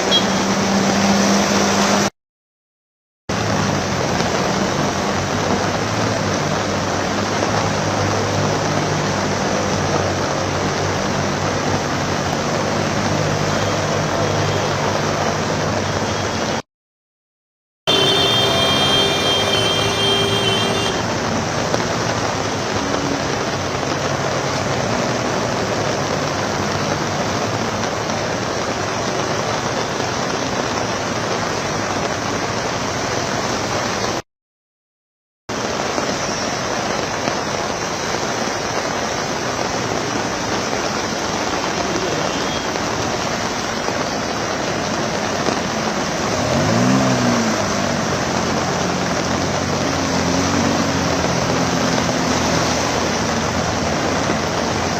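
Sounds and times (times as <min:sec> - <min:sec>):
rain and tyres through water: 0:00.0 - 0:02.2, 0:03.3 - 0:16.6, 0:17.9 - 0:34.2, 0:35.5 - 0:54.9
vehicle engines running: 0:39.3 - 0:54.9.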